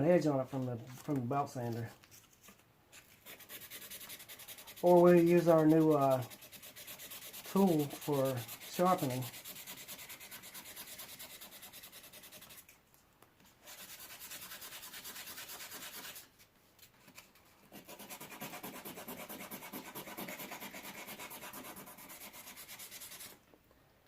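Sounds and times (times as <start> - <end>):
sandpaper rubbing steel blade: 3.2 - 12.7, 13.6 - 16.3, 17.7 - 23.4.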